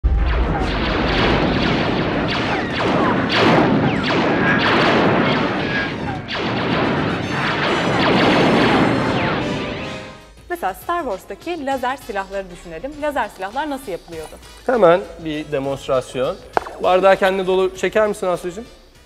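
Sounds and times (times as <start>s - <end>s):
booms and crashes: 0.0s - 9.8s, 16.5s - 17.3s.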